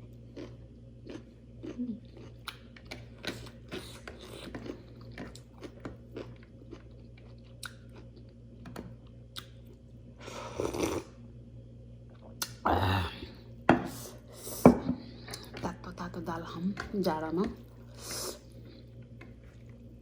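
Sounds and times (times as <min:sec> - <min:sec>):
chewing and crunching food: 0:00.0 - 0:11.2, 0:14.9 - 0:20.0.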